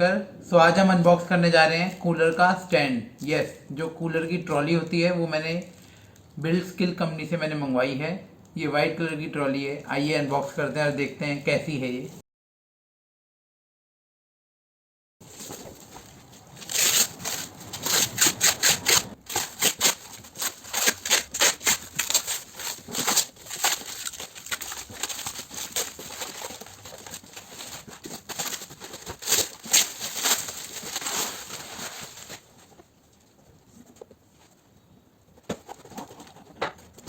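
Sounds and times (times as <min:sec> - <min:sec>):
cardboard and plastic rustling: 0:15.2 - 0:37.0.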